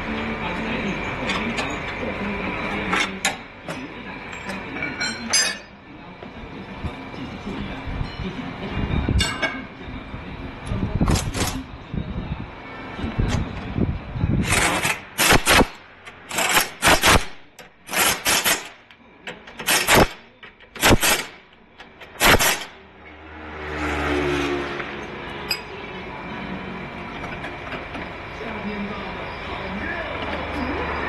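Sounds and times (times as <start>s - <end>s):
workshop tool bursts: 14.4s - 18.8s, 19.5s - 21.4s, 22.1s - 22.7s.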